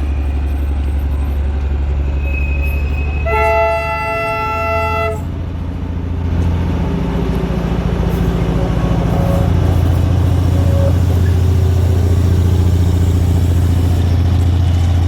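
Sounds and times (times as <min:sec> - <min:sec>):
train horn: 0:03.2 - 0:05.3.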